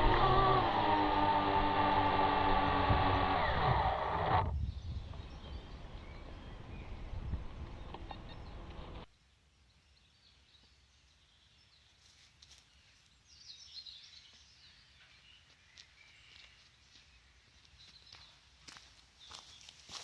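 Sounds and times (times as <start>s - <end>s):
low wind rumble on microphone: 0.0s - 9.0s.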